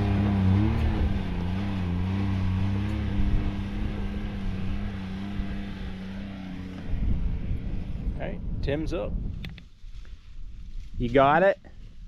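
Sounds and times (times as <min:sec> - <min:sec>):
utility vehicle engine running: 0:00.0 - 0:08.1.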